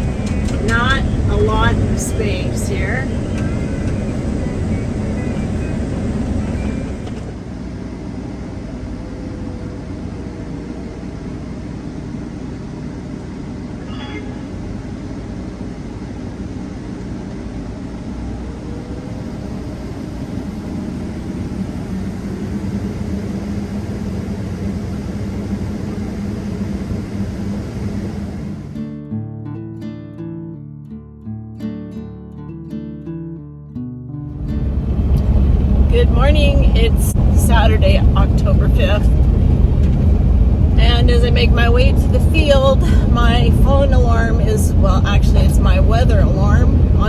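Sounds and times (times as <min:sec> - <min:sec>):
vehicle engine and road noise: 0:00.0 - 0:28.8, 0:34.3 - 0:47.0.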